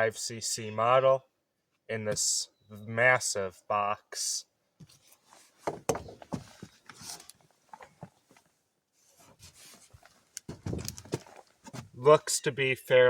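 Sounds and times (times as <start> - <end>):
cardboard box knocks and rubbing: 5.6 - 6.8.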